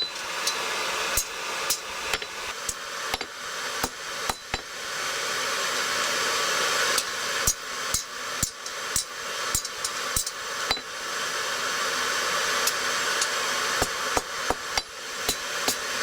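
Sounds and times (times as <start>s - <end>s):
hammer striking hot steel: 0.0s - 4.8s, 7.0s - 10.9s, 12.6s - 16.0s
steady rushing hiss: 0.0s - 16.0s.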